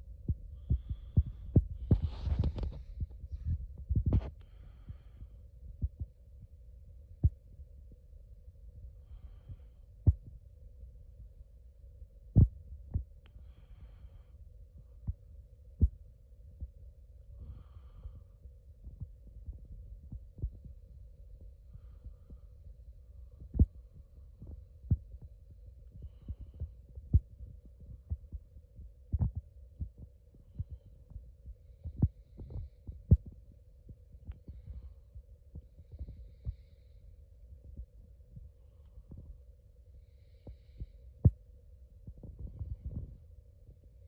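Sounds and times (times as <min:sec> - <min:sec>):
low hum: 0:00.0 - 0:44.0.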